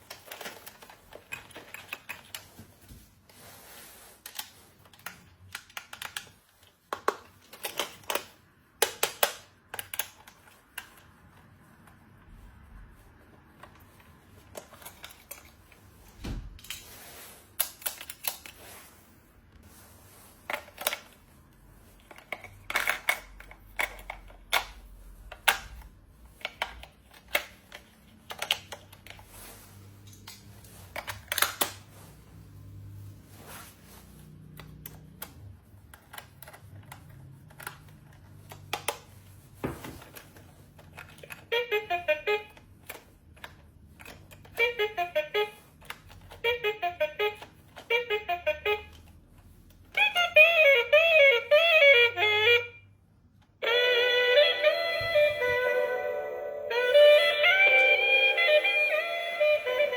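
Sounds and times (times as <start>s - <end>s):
plastic toy pieces clicking: 4.3s - 11.0s
brief musical tone: 53.9s - 59.9s.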